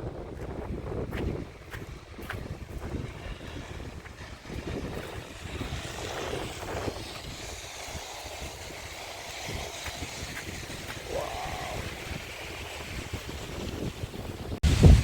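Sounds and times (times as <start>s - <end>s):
wind rumbling on microphone: 0.0s - 15.0s
steady hiss: 3.4s - 15.0s.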